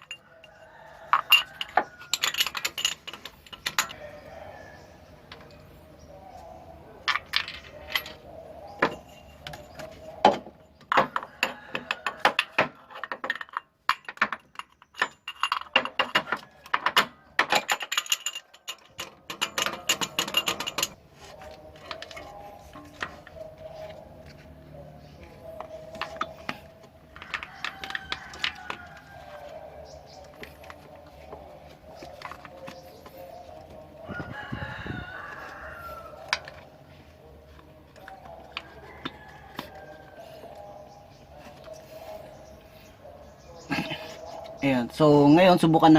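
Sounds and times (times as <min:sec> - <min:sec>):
hand tools clinking on metal: 0:00.0 - 0:04.4, 0:07.0 - 0:24.6, 0:25.2 - 0:34.5.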